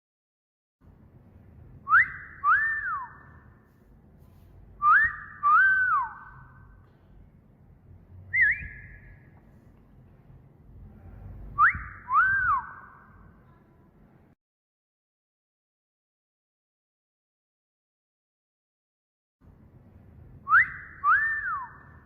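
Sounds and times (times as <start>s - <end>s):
short rising whistle: 1.8s - 3.5s, 4.8s - 6.6s, 8.3s - 9.3s, 11.5s - 13.0s, 20.4s - 22.0s
wolf whistle: 1.8s - 3.5s, 4.8s - 6.7s, 8.3s - 9.2s, 11.6s - 13.1s, 20.4s - 22.0s.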